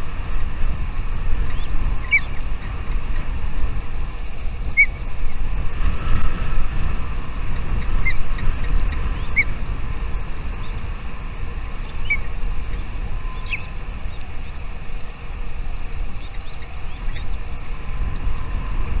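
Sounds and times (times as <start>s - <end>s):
steady low rumble: 0.0s - 19.0s
bird chirping: 10.5s - 15.2s, 16.1s - 17.7s.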